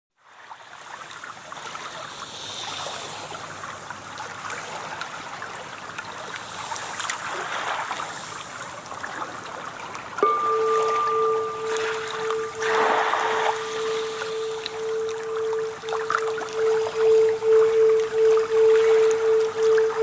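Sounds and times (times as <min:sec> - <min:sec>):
ocean waves splashing: 0:10.2 - 0:20.0.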